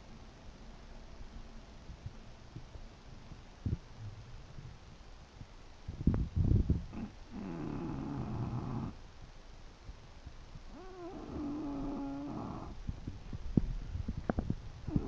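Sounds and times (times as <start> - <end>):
dog snoring: 6.9 - 9.0, 10.7 - 12.8.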